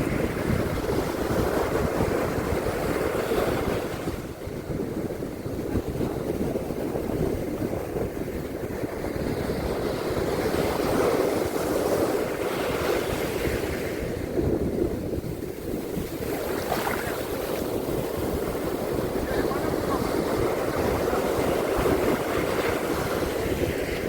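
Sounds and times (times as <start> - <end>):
sea waves washing onto beach: 0.0 - 24.0
wind rumbling on microphone: 0.0 - 24.0.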